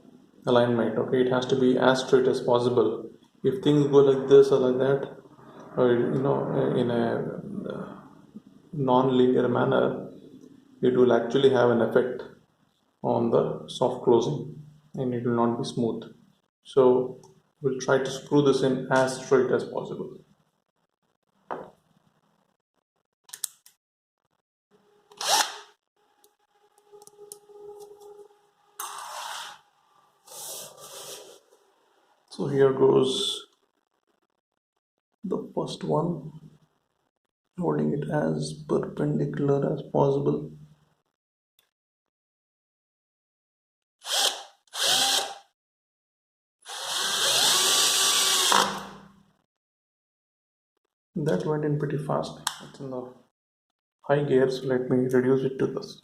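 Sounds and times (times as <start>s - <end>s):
drill driver driving screw: 25.1s - 25.7s, 44.0s - 45.5s, 46.7s - 49.0s.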